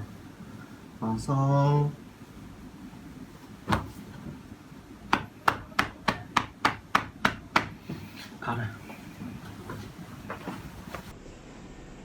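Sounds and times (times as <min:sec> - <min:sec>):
hands slapping on body: 0:03.6 - 0:04.2, 0:05.1 - 0:08.1.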